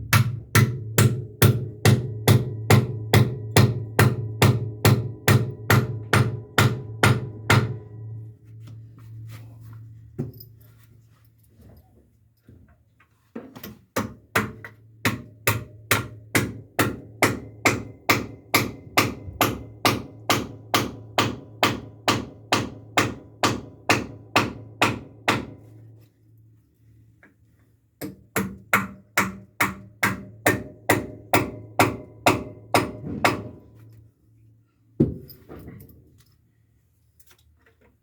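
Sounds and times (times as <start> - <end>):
hammer striking nails into timber: 0.0 - 7.8, 14.0 - 25.6, 28.0 - 33.6.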